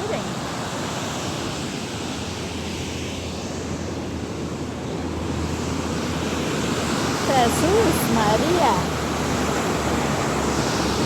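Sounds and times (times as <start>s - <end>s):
river rushing over rocks: 5.0s - 11.0s.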